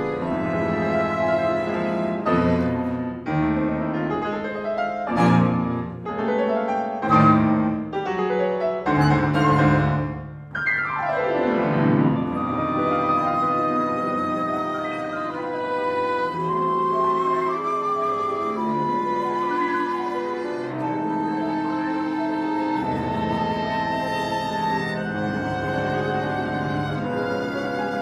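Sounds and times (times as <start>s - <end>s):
sustained violin and cello: 0.0s - 3.2s, 12.3s - 28.0s
piano striking heavy chords: 2.3s - 25.2s.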